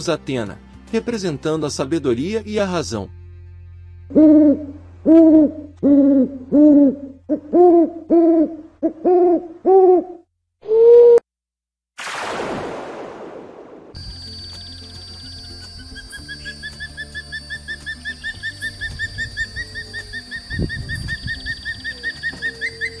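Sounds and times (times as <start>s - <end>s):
owl hooting: 4.1s - 11.2s, 16.0s - 23.0s.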